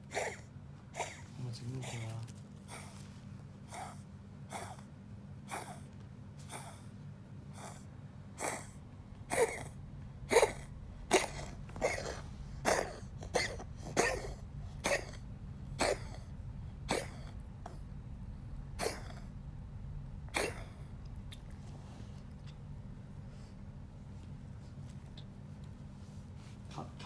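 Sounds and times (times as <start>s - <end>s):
pet coughing: 0.0s - 3.0s, 3.6s - 6.9s, 7.5s - 17.9s, 18.7s - 19.4s, 20.3s - 21.2s.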